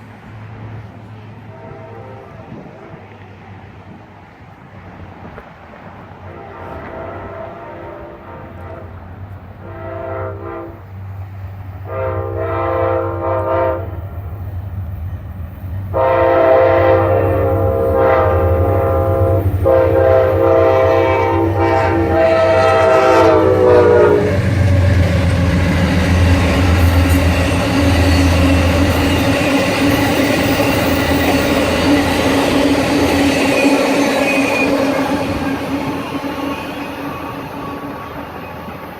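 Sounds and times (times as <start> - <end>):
train cars rumbling: 0.0 - 38.9
locomotive air horn blasts: 1.4 - 3.0, 6.2 - 11.0, 11.8 - 14.2, 15.9 - 24.5
wheels clicking on rail joints: 24.3 - 38.9.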